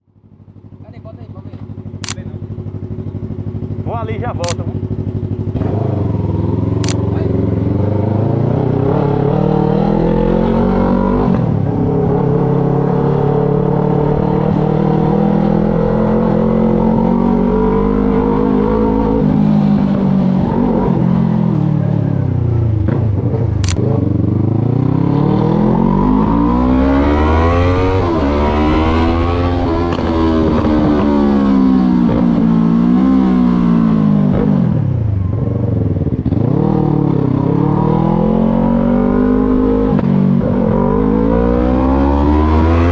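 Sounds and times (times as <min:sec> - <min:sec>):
motorcycle engine: 0:00.0 - 0:42.9
sharp click: 0:02.0 - 0:02.3, 0:04.4 - 0:04.6, 0:06.8 - 0:07.1, 0:23.6 - 0:23.8.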